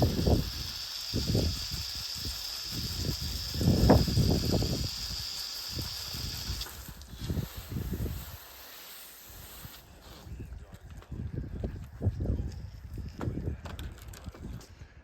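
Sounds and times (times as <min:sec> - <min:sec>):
wind buffeting microphone: 0:00.0 - 0:08.4, 0:09.5 - 0:15.0
spray nozzle hissing: 0:00.0 - 0:09.9.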